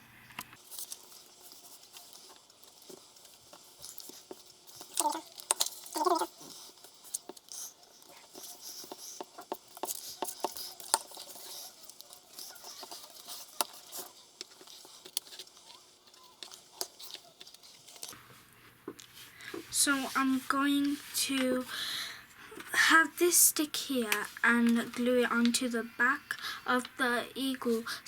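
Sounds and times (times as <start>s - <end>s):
paper rustling: 0.5s - 22.7s, 23.9s - 25.8s
scissors cutting paper: 0.6s - 18.2s.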